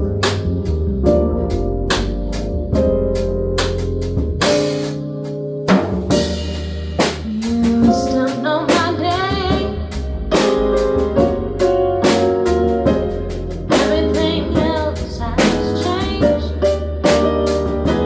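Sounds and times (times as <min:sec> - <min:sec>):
bass: 0:00.0 - 0:18.0
drum kit playing: 0:00.0 - 0:18.0
keyboard chords: 0:00.0 - 0:18.0
person singing: 0:07.2 - 0:10.2, 0:13.7 - 0:16.9.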